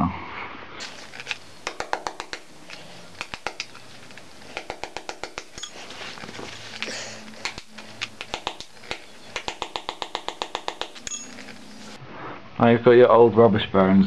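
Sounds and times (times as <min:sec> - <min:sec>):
hammer tapping on metal: 0:07.4 - 0:11.4.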